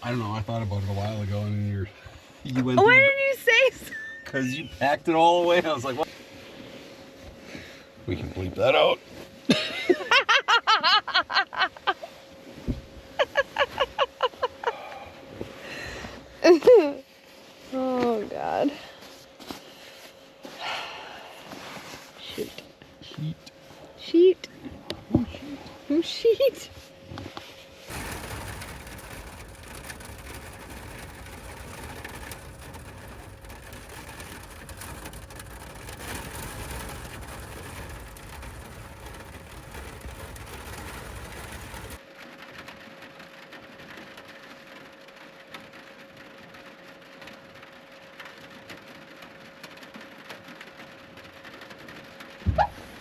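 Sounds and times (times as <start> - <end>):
faint steady hum: 0.0 - 53.0
low rumble: 27.8 - 42.0
rain hiss: 27.8 - 53.0.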